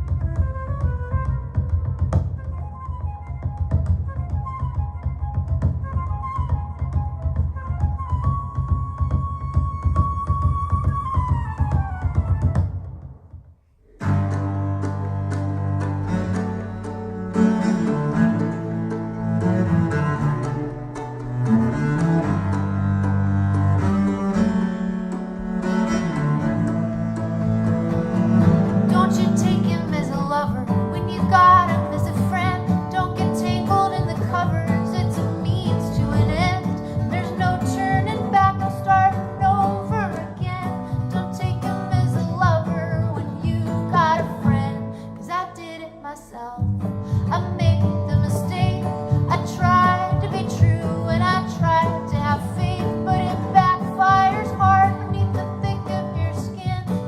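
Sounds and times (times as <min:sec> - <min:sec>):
deep bowed strings: 0:13.8 - 0:41.2.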